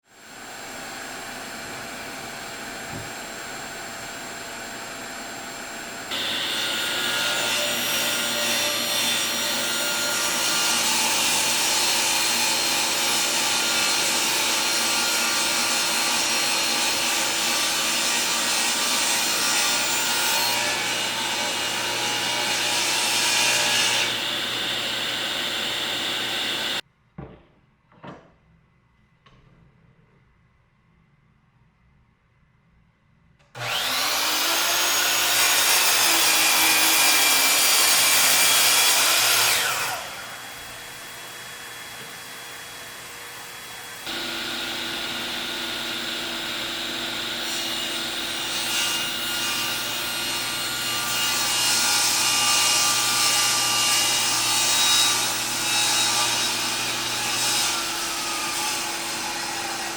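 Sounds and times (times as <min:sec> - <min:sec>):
power saw cutting wood: 0:00.1 - 0:26.8, 0:33.6 - 0:59.9
knocks: 0:27.2 - 0:28.4.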